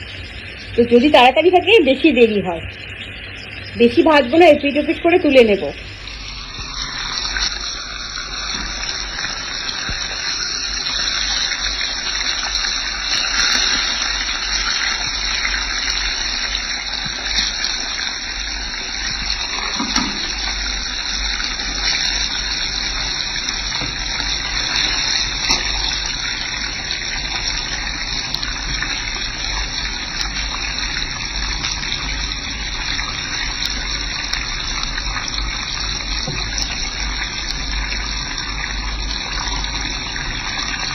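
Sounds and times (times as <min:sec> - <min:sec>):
fish frying in hot oil: 0:00.0 - 0:40.9.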